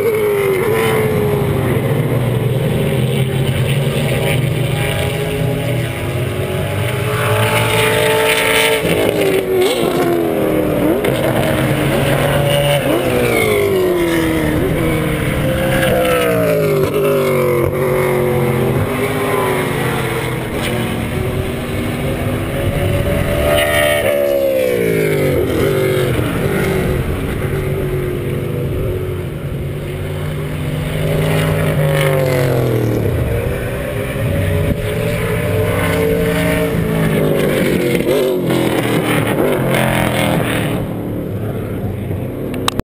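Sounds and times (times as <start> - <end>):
race car engines downshifting: 0.0 - 42.8
race cars passing: 0.0 - 42.8.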